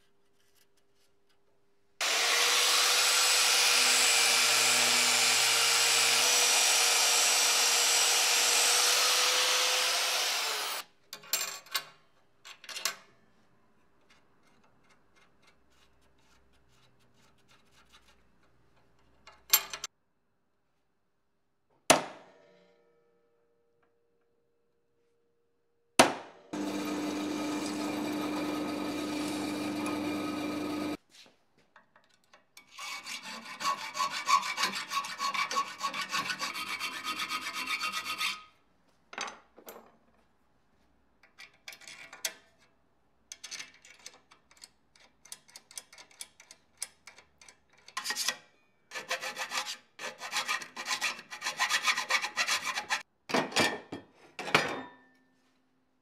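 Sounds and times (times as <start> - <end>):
power tool running: 2.0 - 10.8, 26.6 - 31.0.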